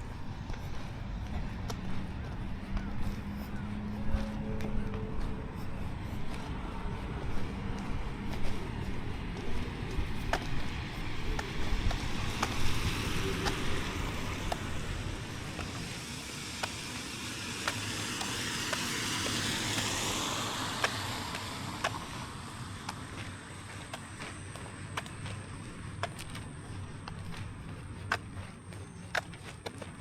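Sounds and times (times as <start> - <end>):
low traffic rumble: 0.0 - 30.0
car tyres hissing on wet road: 5.5 - 28.2
steady wet hiss: 10.9 - 29.7.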